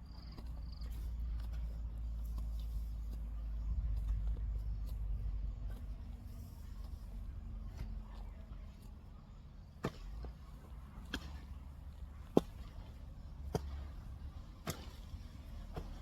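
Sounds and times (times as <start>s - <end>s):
weeding tool chopping soil: 0.0s - 16.0s.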